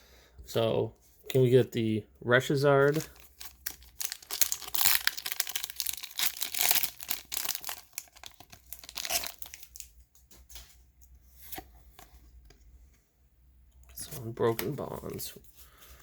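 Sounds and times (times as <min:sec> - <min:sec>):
foil wrapper tearing and crinkling: 0:02.8 - 0:09.9
cards rustling and clicking: 0:02.8 - 0:10.8.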